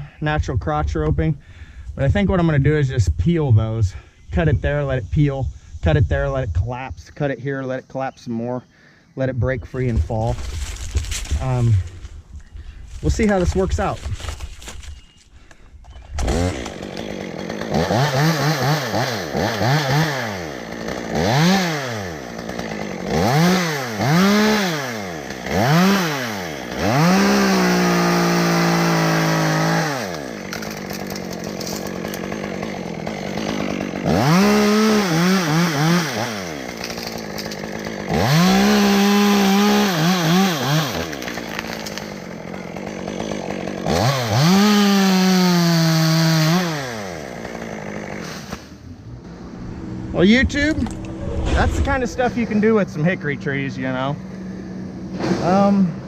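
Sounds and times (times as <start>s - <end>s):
chainsaw revving and cutting: 16.1s - 56.0s.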